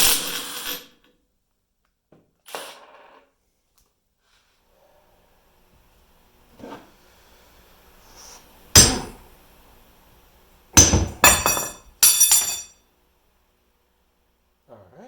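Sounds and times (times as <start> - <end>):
metal objects clanking: 10.8 - 12.7.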